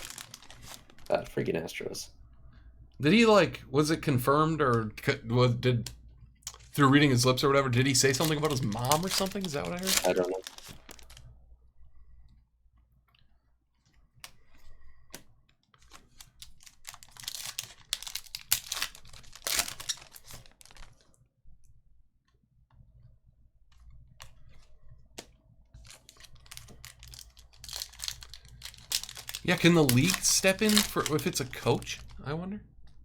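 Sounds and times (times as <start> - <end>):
cards clicking and rustling: 0.0 - 1.1, 6.5 - 11.2, 15.2 - 21.0, 25.2 - 32.2
card pack wrappers crinkling: 0.0 - 2.0, 6.5 - 11.3, 15.8 - 21.1, 25.8 - 32.2.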